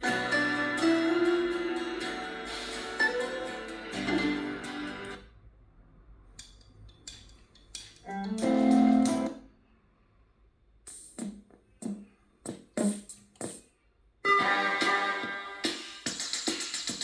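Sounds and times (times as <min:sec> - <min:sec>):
guitar music through small speaker: 0:00.0 - 0:05.2, 0:08.1 - 0:09.4.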